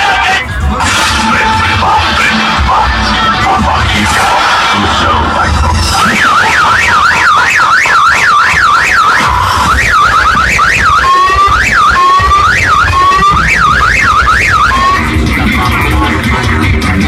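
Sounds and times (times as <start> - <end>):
electronic siren wailing: 0.0 - 17.0
low bass rumble: 0.5 - 6.2, 9.2 - 17.0.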